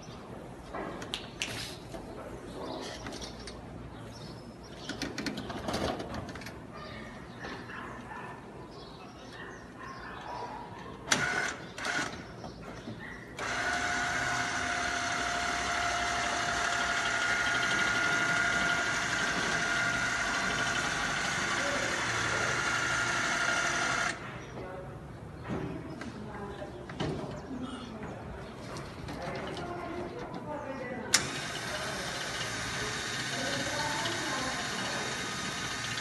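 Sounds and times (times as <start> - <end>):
electric motor whining: 13.4 - 24.2, 31.2 - 36.0.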